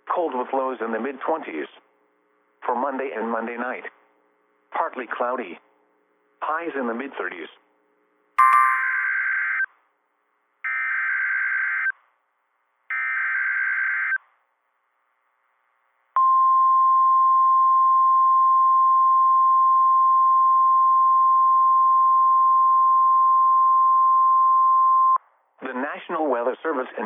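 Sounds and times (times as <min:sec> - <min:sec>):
steady attention tone: 0:08.4 - 0:09.6.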